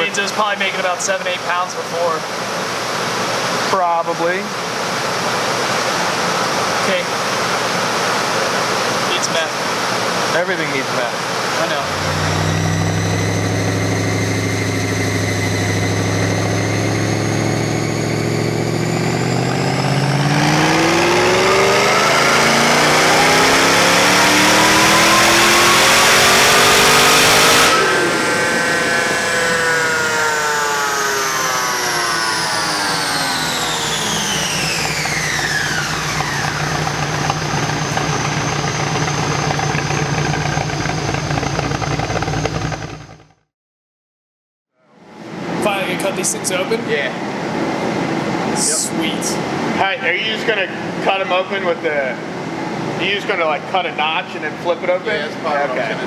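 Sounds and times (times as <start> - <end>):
high whine winding down: 9.1 - 43.3, 45.0 - 56.0
engine revving at full throttle: 10.3 - 43.3
engine idling: 11.6 - 43.4.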